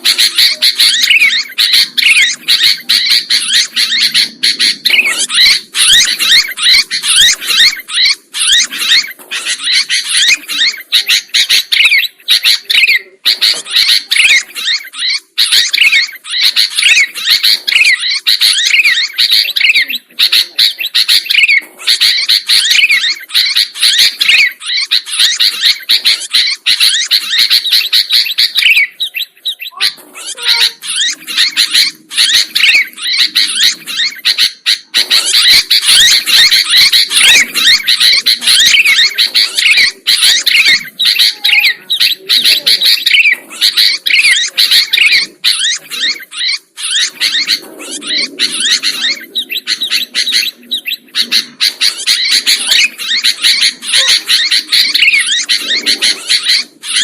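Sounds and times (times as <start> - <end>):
birds chirping and chattering: 0.0 - 57.0.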